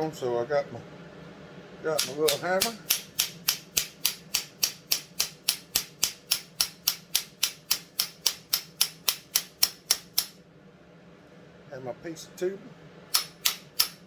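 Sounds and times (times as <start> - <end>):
small hammer tapping on tube: 2.0 - 10.4, 13.1 - 14.0.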